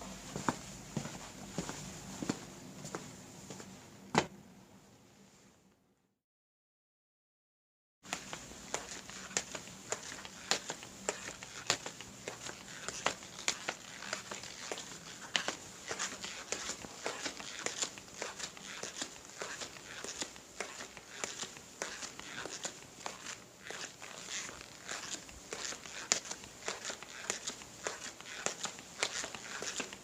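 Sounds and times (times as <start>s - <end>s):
foot scuffs: 0.0s - 4.3s, 8.1s - 30.0s
crisp footsteps: 0.3s - 4.3s, 8.1s - 30.0s.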